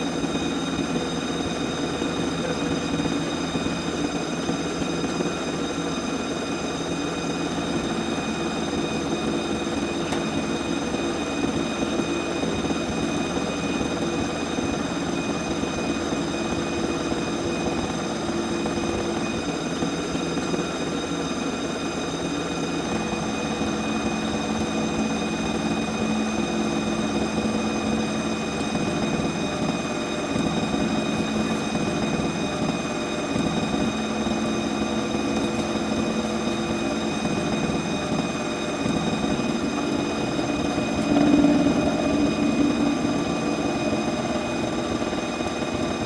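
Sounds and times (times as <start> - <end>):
milling machine spindle whine: 0.0 - 46.0
low machine hum: 22.7 - 46.0
metal cutting noise: 34.6 - 46.0.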